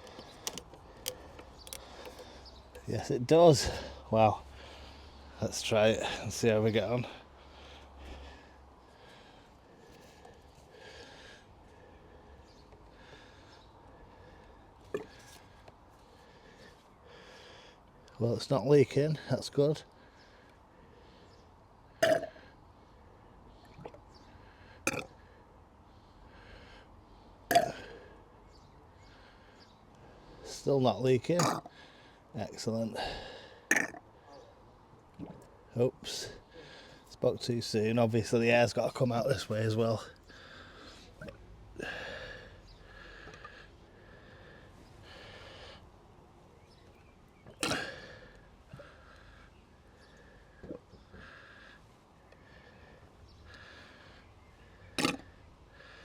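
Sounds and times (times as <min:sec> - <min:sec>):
plastic bottle glugging: 0:14.9 - 0:15.2.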